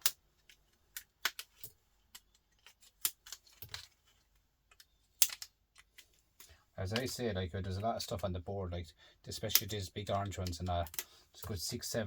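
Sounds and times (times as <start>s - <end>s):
pliers snapping components: 4.7s - 5.9s.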